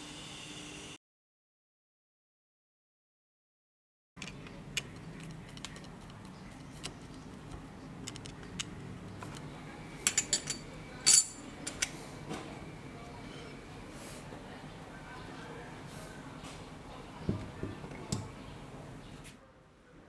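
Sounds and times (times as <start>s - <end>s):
metal tools clinking on workbench: 10.0s - 11.9s.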